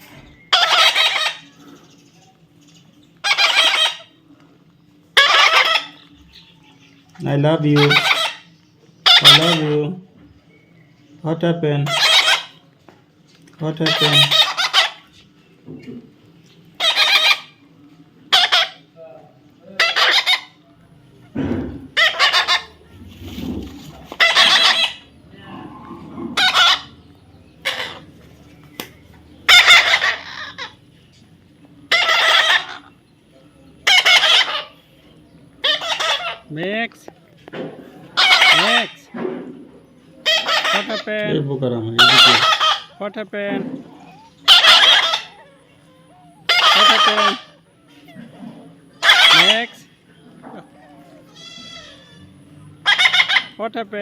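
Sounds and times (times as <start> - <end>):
parrot shrill calls: 0.5 - 1.4, 3.2 - 4.1, 5.2 - 6.1, 7.8 - 9.8, 11.8 - 12.6, 13.8 - 15.1, 16.8 - 17.6, 18.3 - 18.9, 19.7 - 20.6, 21.9 - 22.8, 24.0 - 25.1, 26.3 - 28.1, 29.5 - 30.8, 31.9 - 32.9, 33.8 - 34.8, 35.6 - 36.5, 38.2 - 39.0, 40.2 - 41.1, 42.0 - 43.0, 44.0 - 47.9, 49.0 - 49.8, 50.9 - 53.6.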